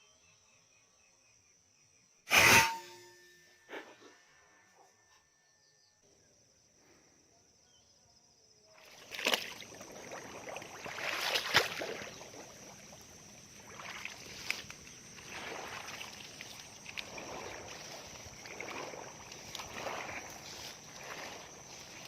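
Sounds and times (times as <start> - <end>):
water sloshing and splashing: 8.8 - 22.0.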